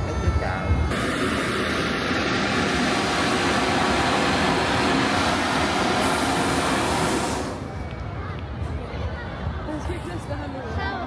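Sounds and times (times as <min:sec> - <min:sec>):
flame jet roaring: 0:00.9 - 0:07.9.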